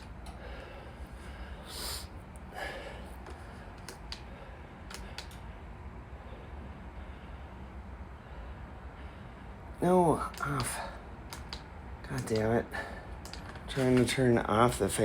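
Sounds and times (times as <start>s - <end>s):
fan humming: 0.0s - 15.0s
short breaths: 0.3s - 5.4s
sharp clicks: 3.2s - 4.3s, 4.9s - 5.5s, 10.2s - 12.6s, 13.2s - 14.0s.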